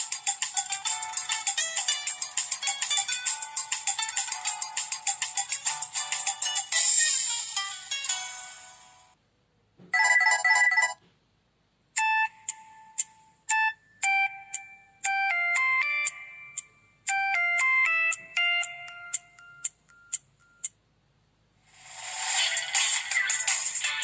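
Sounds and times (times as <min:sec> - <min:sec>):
synthesized ringtone melody: 0:00.0 - 0:08.8, 0:12.0 - 0:20.7.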